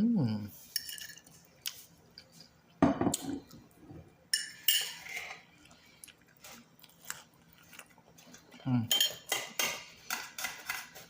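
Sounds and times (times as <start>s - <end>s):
fork clinking on a plate: 8.9s - 10.9s.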